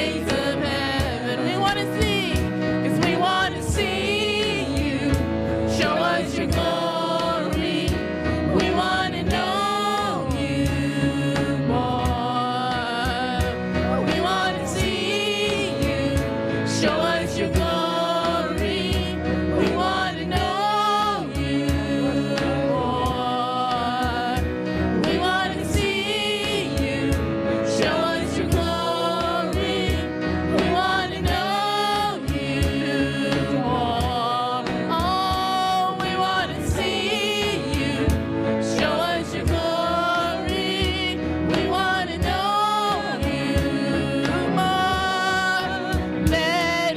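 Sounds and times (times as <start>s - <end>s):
instrumental accompaniment: 0.0s - 46.9s
person singing with vibrato: 38.8s - 46.9s.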